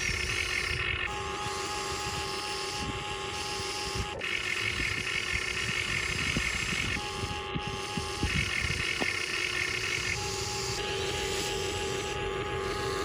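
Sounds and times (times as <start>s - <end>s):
small electric motors whining: 0.0s - 13.0s.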